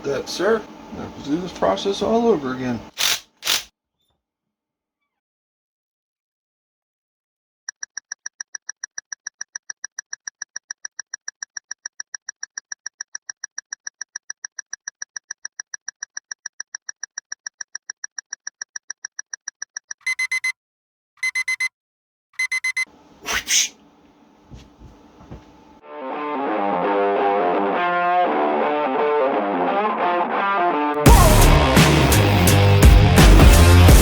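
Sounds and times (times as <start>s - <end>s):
loud beep bursts: 20.0s - 20.5s, 21.2s - 21.7s, 22.4s - 22.9s
rapid short beeps: 20.0s - 20.6s, 21.2s - 21.7s, 22.4s - 22.9s.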